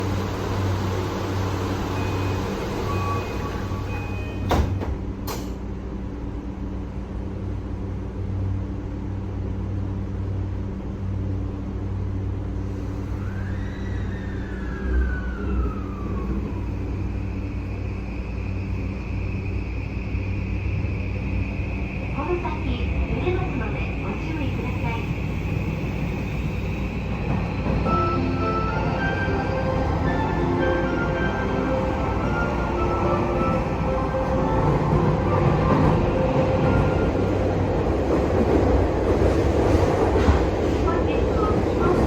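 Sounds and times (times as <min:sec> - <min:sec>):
train doors thudding shut: 0:03.3 - 0:05.6
steady high tone: 0:27.8 - 0:37.7.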